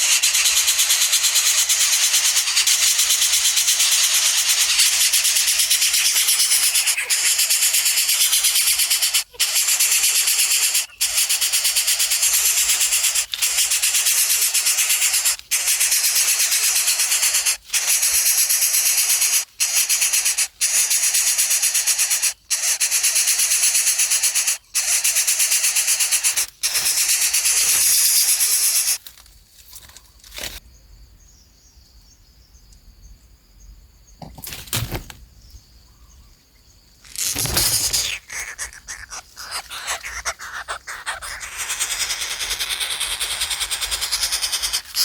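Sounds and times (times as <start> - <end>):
faint high insect chirring: 0.0 - 45.0
brief rustles: 37.0 - 38.3.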